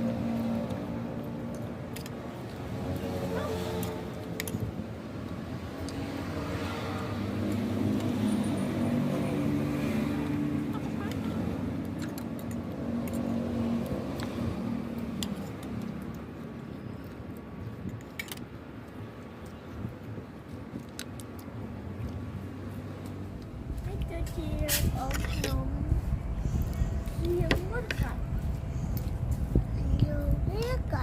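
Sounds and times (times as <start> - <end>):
vehicle engine passing by: 0.0 - 16.4.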